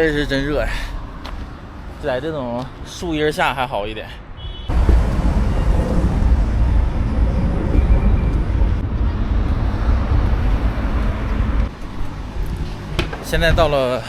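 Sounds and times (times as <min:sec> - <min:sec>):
city traffic: 0:00.0 - 0:14.0
wind rumbling on microphone: 0:04.7 - 0:13.9.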